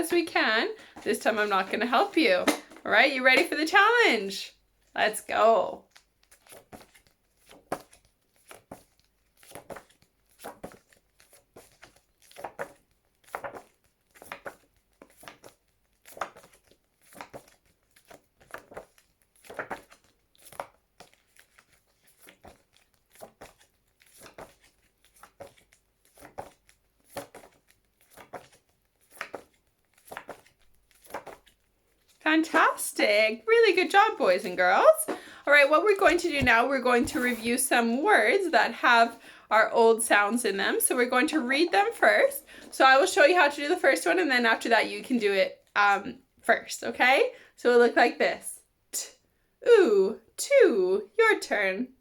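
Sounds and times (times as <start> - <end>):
paper cards flicking: 5.9 - 31.6.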